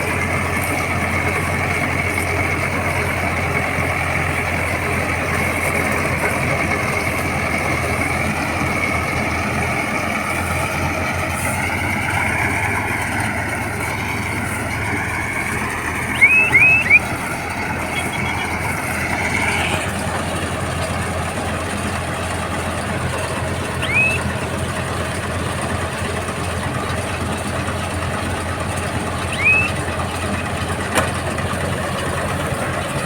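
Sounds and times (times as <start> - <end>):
baler machinery running: 0.0 - 33.0
tractor diesel engine running: 0.0 - 33.0
short high squeaks: 16.1 - 17.1, 23.8 - 24.3, 29.3 - 29.8.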